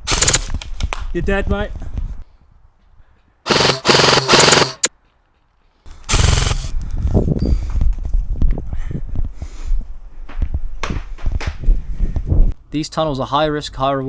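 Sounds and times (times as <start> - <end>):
airsoft gun firing bursts: 0.0 - 0.6, 3.5 - 4.9, 6.1 - 6.7.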